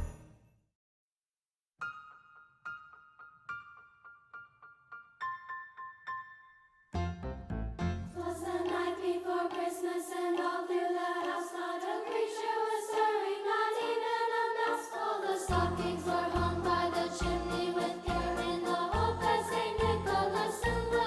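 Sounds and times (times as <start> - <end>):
choir singing held notes: 8.1 - 21.0.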